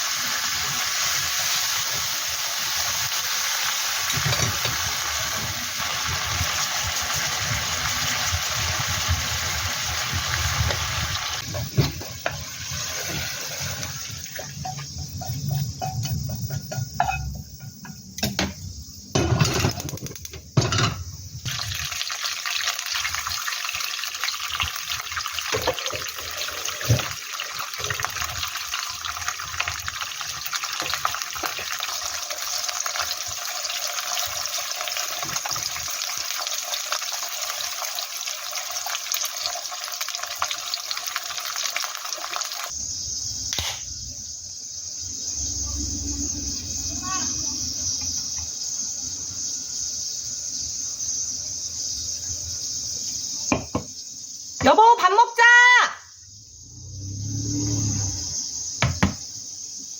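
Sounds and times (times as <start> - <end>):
kitchen tap running: 0.8 - 15.4, 19.2 - 42.7.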